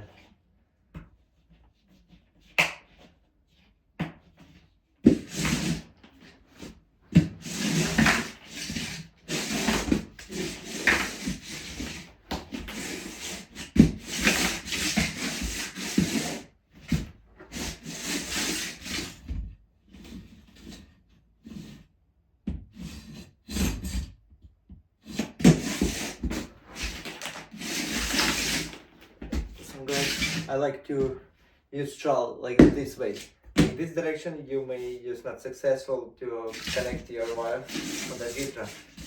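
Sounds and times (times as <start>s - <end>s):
scraping over floor membrane: 5.0s - 19.2s, 25.1s - 31.2s, 36.5s - 39.0s.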